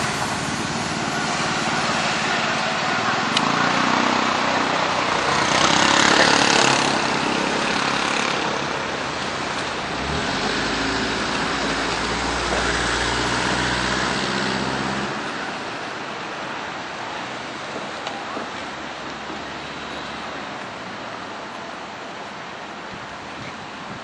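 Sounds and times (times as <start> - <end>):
vehicle passing loudly: 0.0 - 17.6.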